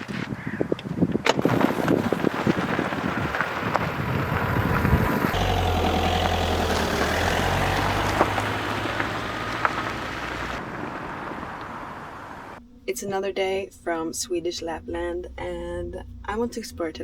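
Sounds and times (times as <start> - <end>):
crackling noise: 1.4 - 12.6
vehicle engine humming: 1.4 - 12.7, 14.7 - 17.0.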